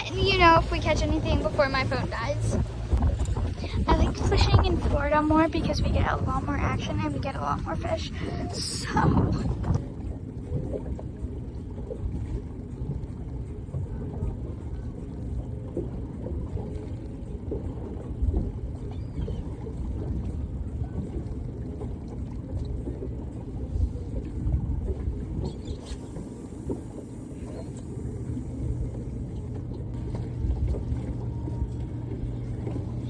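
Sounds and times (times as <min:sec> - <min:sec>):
boat motor rumbling: 0:00.0 - 0:33.0.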